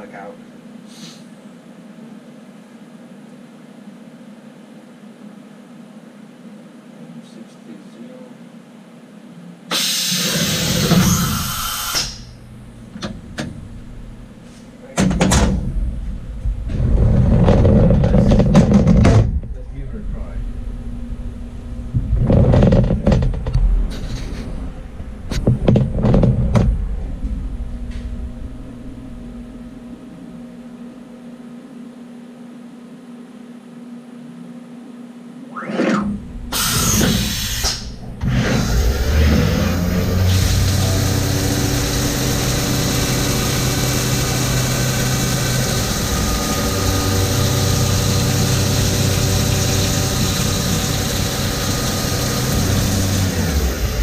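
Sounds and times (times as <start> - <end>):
steady hissing with hum: 0.0 - 54.0
machine clunks and whirs: 9.7 - 30.3, 35.4 - 54.0.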